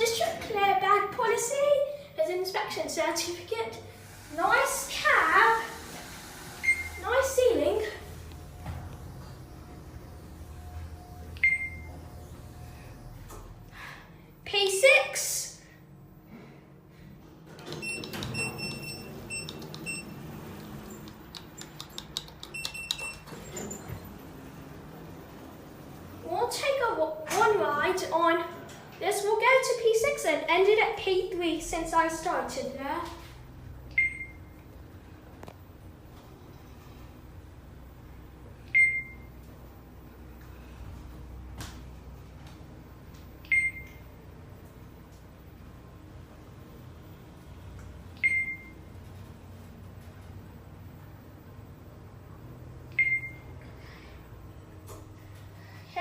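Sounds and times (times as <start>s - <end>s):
elevator hum: 0.0s - 15.1s, 16.9s - 56.0s
elevator short high beeps: 6.5s - 7.1s, 10.4s - 12.9s, 17.7s - 21.0s, 22.5s - 24.0s, 33.9s - 34.5s, 38.7s - 39.3s, 43.4s - 44.0s, 48.2s - 48.8s, 52.9s - 53.6s
sharp clicks and knocks: 20.6s - 23.3s.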